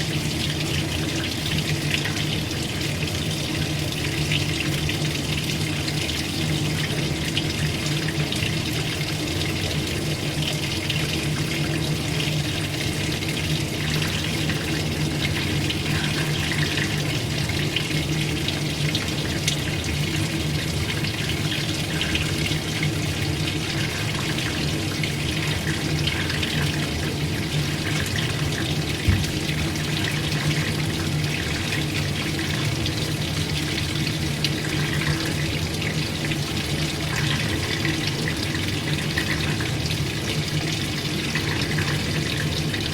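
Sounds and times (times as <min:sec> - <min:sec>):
washing machine motor hum: 0:00.0 - 0:42.9
water splashing: 0:21.5 - 0:32.6
short knock: 0:29.1 - 0:29.4.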